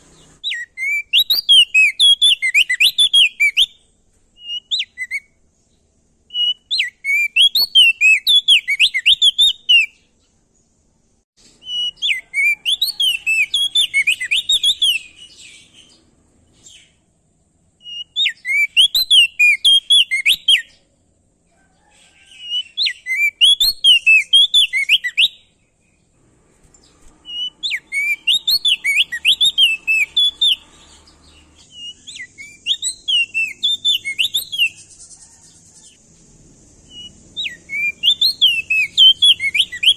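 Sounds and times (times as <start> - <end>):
faint high hiss: 25.5 - 39.9
songbird warbling: 26.8 - 36.0, 36.8 - 39.9.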